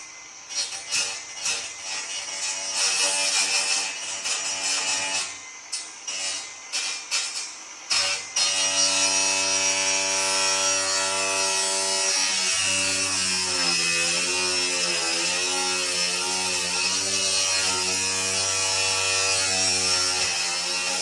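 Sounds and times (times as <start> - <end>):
small power tool motor running: 0.0 - 21.0.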